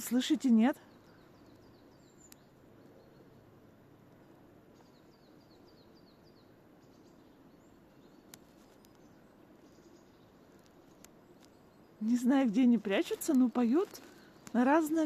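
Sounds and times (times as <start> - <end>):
distant songbird singing: 0.0 - 15.0.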